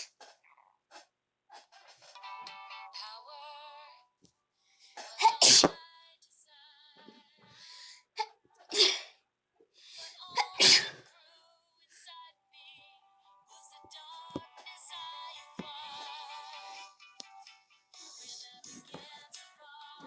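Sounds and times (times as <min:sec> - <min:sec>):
person sneezing: 0:05.2 - 0:05.8, 0:08.2 - 0:09.1, 0:10.4 - 0:11.0.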